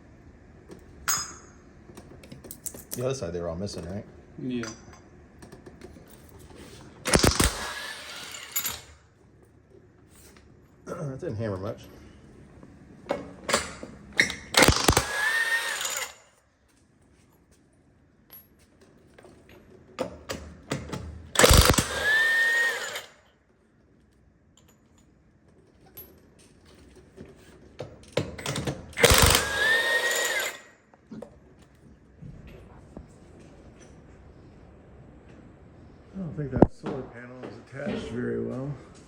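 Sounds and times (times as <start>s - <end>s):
pneumatic impact wrench hammering: 7.0s - 9.0s, 13.5s - 16.3s, 20.0s - 23.2s, 28.2s - 30.7s.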